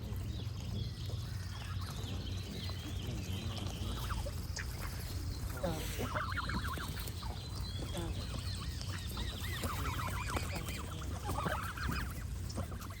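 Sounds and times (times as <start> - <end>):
small birds chirping: 0.0 - 13.0
steady low rumble: 0.0 - 13.0
geese honking: 1.2 - 13.0.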